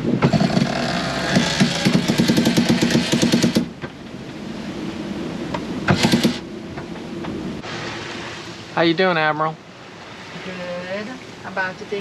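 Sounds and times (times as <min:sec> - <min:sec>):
water noise: 0:00.0 - 0:12.0
wind: 0:00.0 - 0:12.0.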